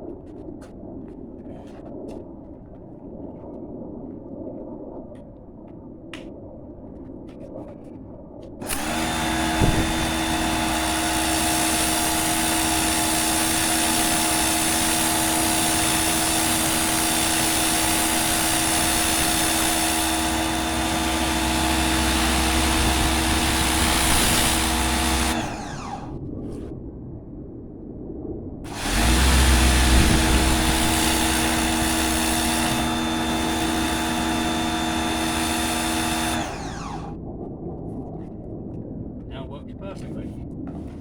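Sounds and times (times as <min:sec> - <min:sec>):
electric pressure washer running: 0:08.6 - 0:26.2, 0:28.7 - 0:37.2.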